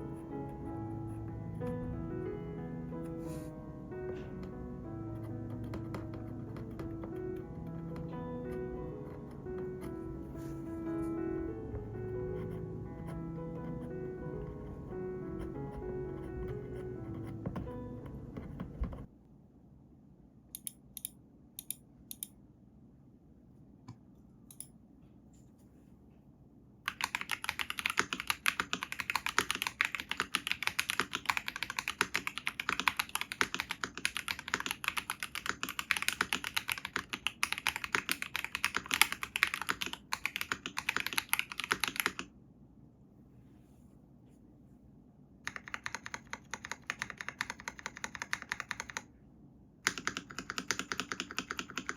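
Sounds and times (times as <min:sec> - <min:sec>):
typing on mechanical keyboard: 0:05.2 - 0:09.9, 0:26.9 - 0:42.3, 0:45.5 - 0:49.1, 0:49.8 - 0:51.9.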